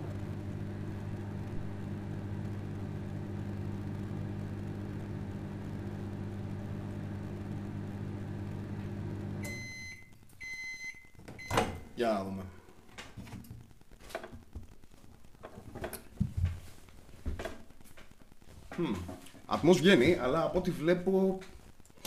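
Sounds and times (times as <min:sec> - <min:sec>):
microwave oven humming: 0:00.0 - 0:11.8
microwave beeps: 0:09.2 - 0:11.8.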